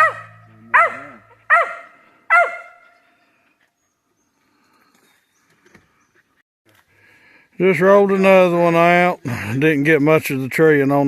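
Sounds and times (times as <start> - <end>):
dog barking sharply: 0.0 - 2.8.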